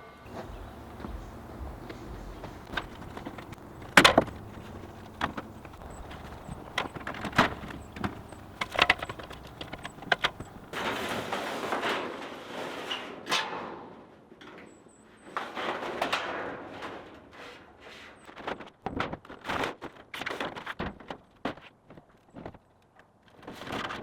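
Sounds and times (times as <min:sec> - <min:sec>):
wooden knocks and clatters: 0:00.3 - 0:10.9
wood scraping on wood: 0:00.3 - 0:11.2.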